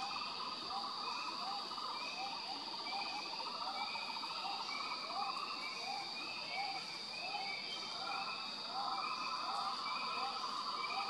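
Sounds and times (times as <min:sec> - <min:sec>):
high insect drone: 0:00.0 - 0:11.0.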